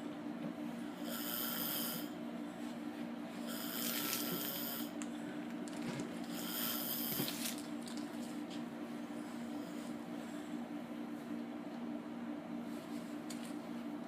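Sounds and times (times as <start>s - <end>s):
steady low hum: 0.0s - 14.0s
person snoring: 1.0s - 2.1s, 3.5s - 5.0s, 6.3s - 7.3s.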